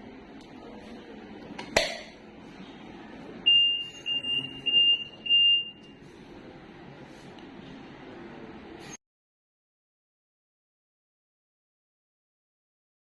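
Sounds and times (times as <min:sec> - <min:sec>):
ventilator alarm beeping: 0:03.4 - 0:06.0.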